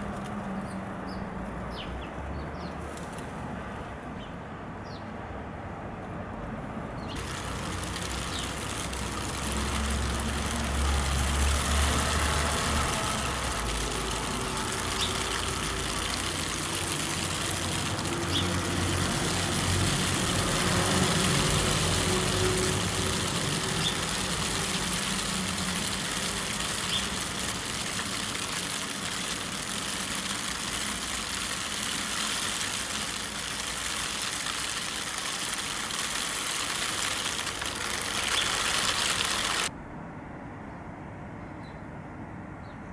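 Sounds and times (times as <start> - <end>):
steady hiss: 7.2 - 39.7
vehicle engine rumbling: 7.2 - 39.7.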